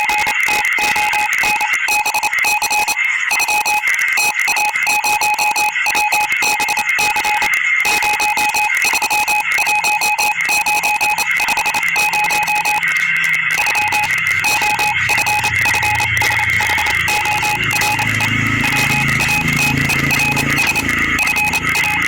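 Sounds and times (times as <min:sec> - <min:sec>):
crackling clicks: 0:00.0 - 0:22.0
morse code beeping: 0:00.0 - 0:22.0
low hum: 0:12.5 - 0:22.0.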